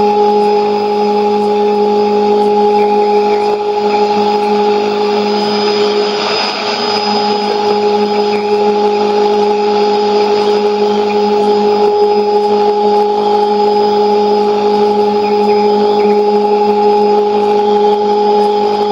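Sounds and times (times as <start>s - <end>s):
radio test tone: 0.0s - 18.9s
radio static hiss: 2.2s - 16.2s
radio interference: 2.3s - 13.6s.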